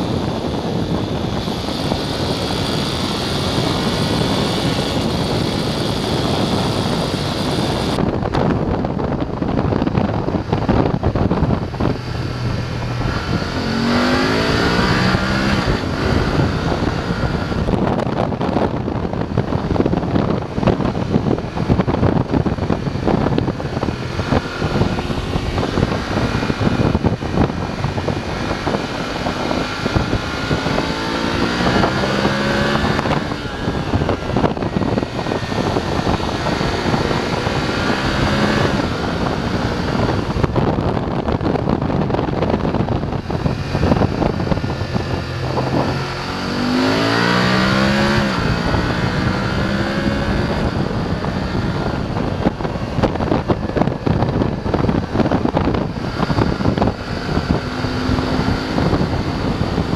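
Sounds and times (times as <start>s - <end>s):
motorcycle engine revving: 0.0s - 59.9s
wind noise: 0.0s - 59.9s.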